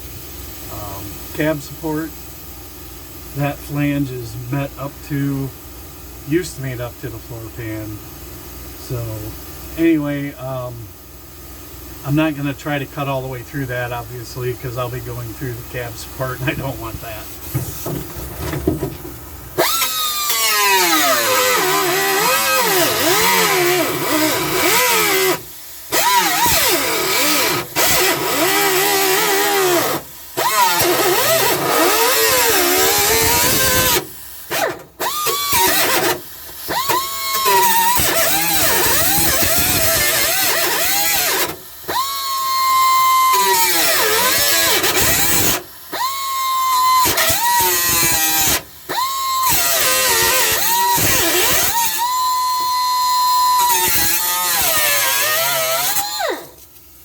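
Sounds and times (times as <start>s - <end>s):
power tool cutting sheet metal: 19.6s - 56.6s.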